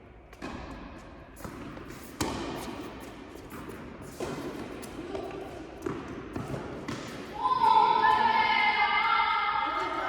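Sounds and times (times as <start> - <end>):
tennis ball bouncing: 1.4 - 7.2
racket striking tennis ball: 1.5 - 2.8.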